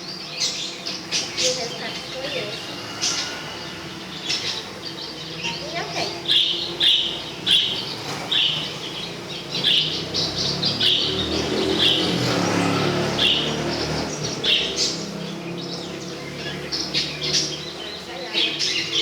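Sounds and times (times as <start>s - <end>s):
bird chirping: 0.0s - 19.0s.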